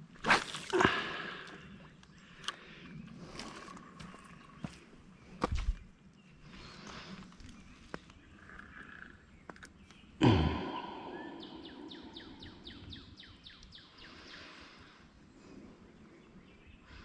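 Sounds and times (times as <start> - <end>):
faint outdoor background noise: 0.0 - 17.0
songbird chirping: 0.8 - 17.0.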